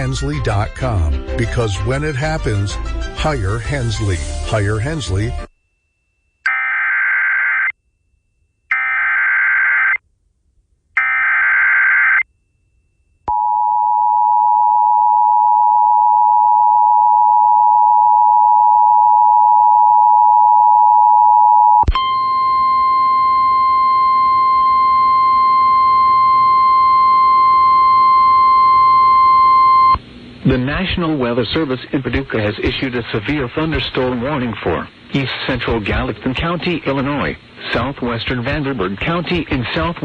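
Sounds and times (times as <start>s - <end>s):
single steady tone: 12.3s - 30.0s.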